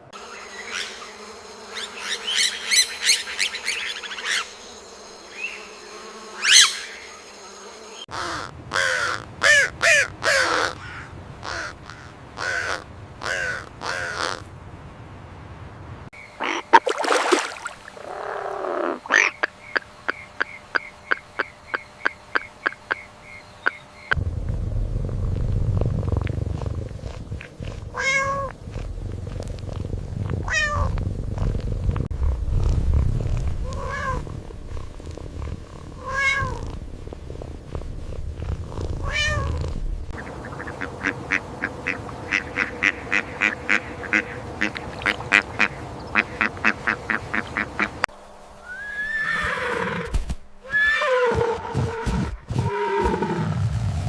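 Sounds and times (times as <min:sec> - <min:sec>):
rapid pulsing animal call: 0:17.9 - 0:24.2, 0:39.0 - 0:48.0
short arched animal calls: 0:18.0 - 0:23.8
low rumble: 0:24.2 - 0:42.8
gliding animal calls: 0:25.1 - 0:48.0, 0:48.6 - 0:54.0.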